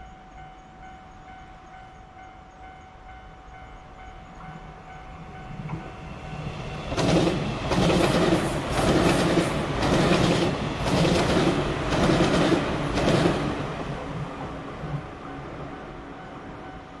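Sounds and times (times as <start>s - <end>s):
train wheels clacking over rail joints: 6.9s - 13.6s.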